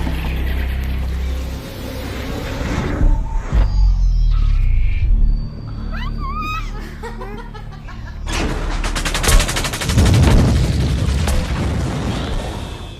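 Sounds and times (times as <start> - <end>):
rapid gunfire sound effect: 8.8 - 11.6
deep rumbling boom: 9.9 - 12.9.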